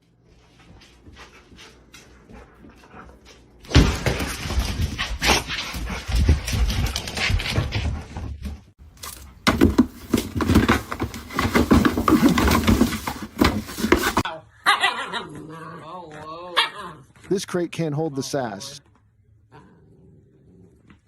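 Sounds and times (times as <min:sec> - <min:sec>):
loud scuffling: 0:03.6 - 0:14.2.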